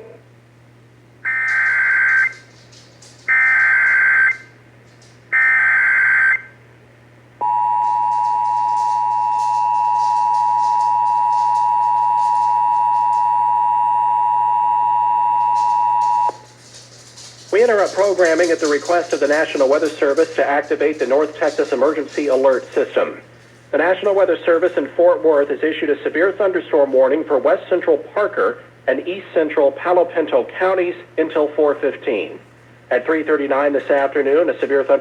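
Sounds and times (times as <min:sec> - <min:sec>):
low steady hum: 0:00.0 - 0:35.0
digital data screech bursts: 0:01.3 - 0:02.4
two-tone attention signal: 0:07.4 - 0:16.4.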